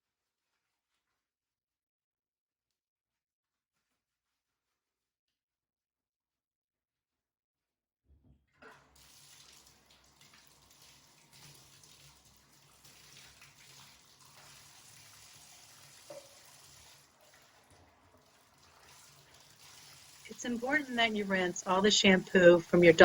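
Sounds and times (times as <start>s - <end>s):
water running and splashing in bathtub: 8.6s - 23.0s.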